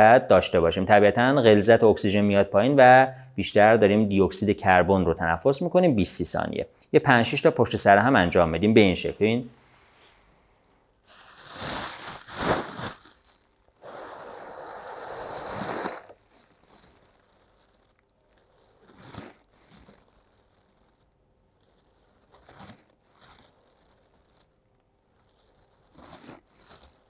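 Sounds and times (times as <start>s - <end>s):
paper bag crinkling: 7.7s - 10.2s, 11.0s - 27.0s
slow breathing into a bag: 9.5s - 17.1s
person blowing into a bag: 11.1s - 16.3s.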